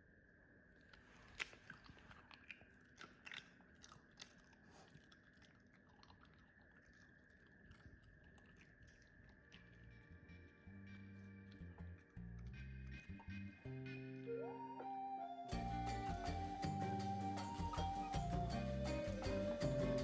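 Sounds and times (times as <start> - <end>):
dog chewing crunchy food: 0.8 - 10.3.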